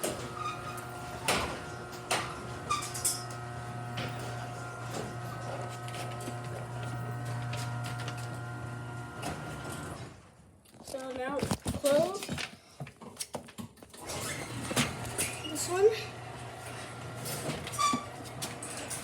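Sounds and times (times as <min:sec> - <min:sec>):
garage door opener motor hum: 0:00.0 - 0:10.2, 0:14.0 - 0:19.0.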